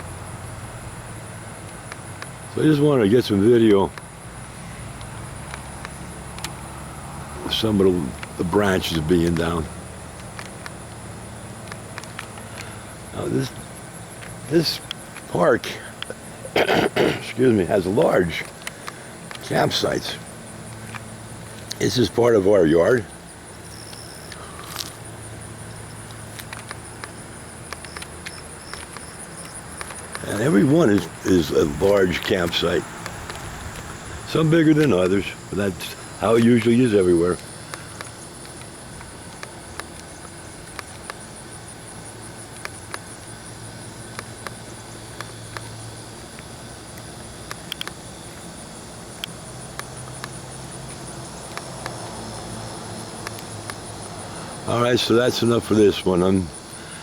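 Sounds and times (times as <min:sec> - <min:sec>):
insects chirring: 0:00.0 - 0:57.0
light clicks: 0:07.6 - 0:11.0, 0:23.1 - 0:34.0, 0:35.9 - 0:41.3, 0:44.0 - 0:48.5, 0:49.2 - 0:52.2, 0:53.0 - 0:54.3.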